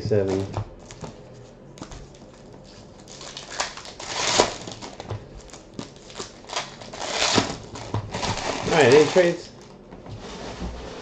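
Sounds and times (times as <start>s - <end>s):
card wrappers crinkling: 2.1s - 9.4s.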